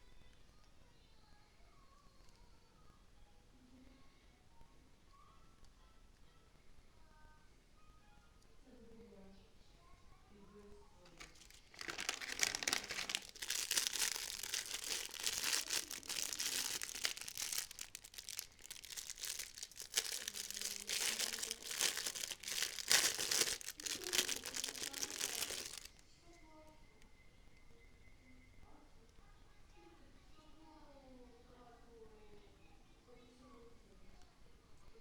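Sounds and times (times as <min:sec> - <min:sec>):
packaging crinkling: 0:11.1 - 0:26.0.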